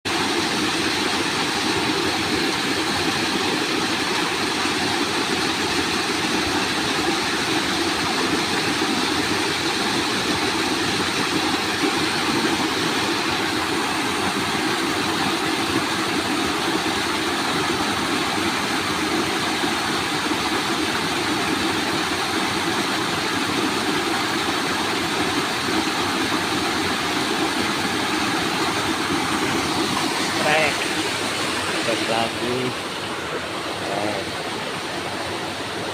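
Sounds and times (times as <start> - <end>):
flowing water rushing: 0.1 - 35.9.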